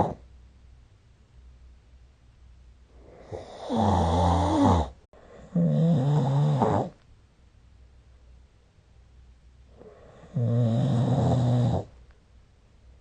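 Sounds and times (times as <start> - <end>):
person snoring: 3.0 - 7.0, 9.8 - 11.9.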